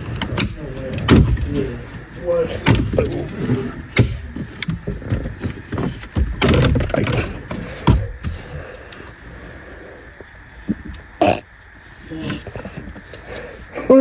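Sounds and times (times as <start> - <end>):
plastic trim clicking and scraping: 0.0 - 8.6.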